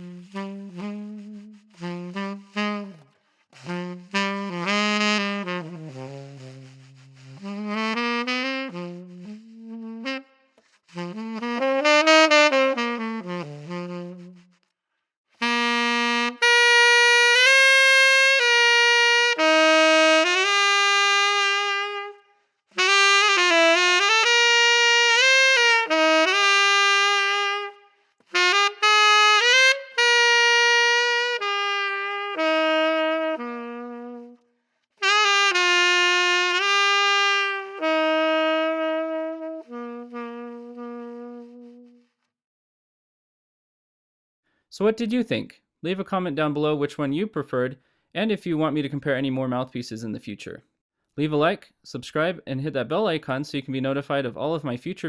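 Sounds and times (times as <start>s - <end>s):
solo saxophone jazz lines: 0.0s - 14.7s, 15.4s - 42.2s
saxophonist breathing: 1.1s - 4.1s, 6.0s - 7.7s, 47.8s - 48.2s.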